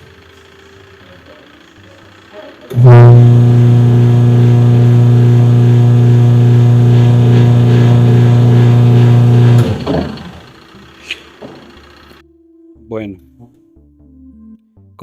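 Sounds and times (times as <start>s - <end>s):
washing machine motor humming: 0.0s - 12.2s.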